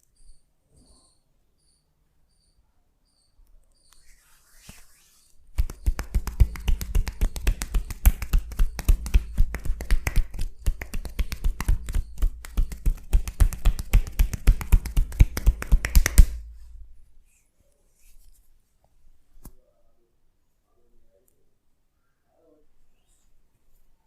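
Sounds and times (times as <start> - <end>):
hands slapping a back: 5.5 - 16.6.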